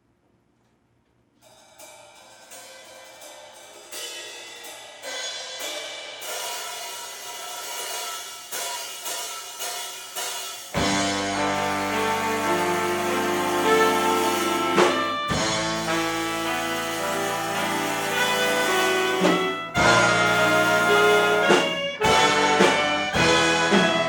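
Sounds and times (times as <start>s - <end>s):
big band playing: 7.6s - 24.0s.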